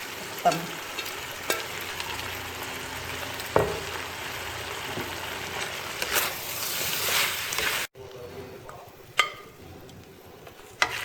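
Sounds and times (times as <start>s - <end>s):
meat and peppers sizzling in a pan: 0.0s - 7.9s
stirring scrapes: 4.7s - 8.5s.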